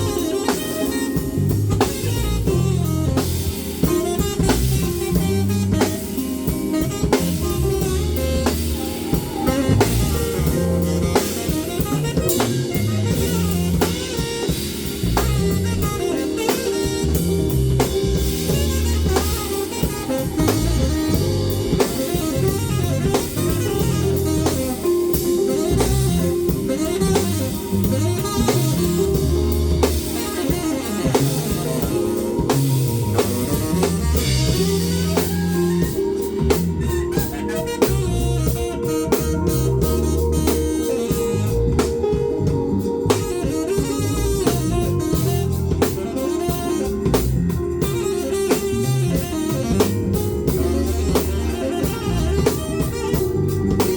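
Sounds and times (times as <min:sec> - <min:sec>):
band playing jazz-blues: 0:00.0 - 0:53.9
bass line: 0:00.0 - 0:53.9.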